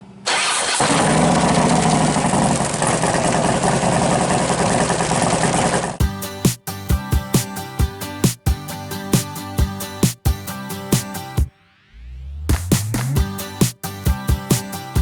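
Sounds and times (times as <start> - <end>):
music with bass and drums: 6.0 - 11.5, 12.3 - 15.0.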